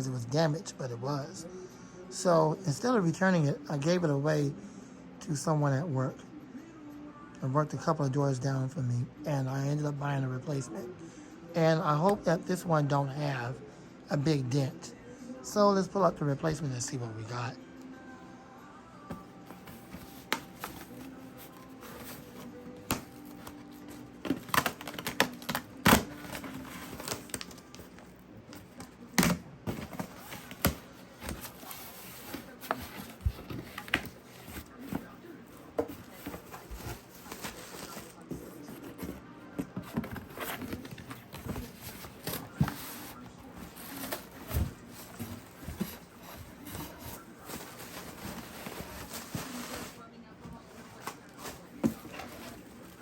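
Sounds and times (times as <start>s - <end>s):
cardboard box being opened: 19.1s - 28.0s, 35.8s - 50.0s, 50.6s - 53.0s
packaging rustling and crinkling: 19.1s - 53.0s.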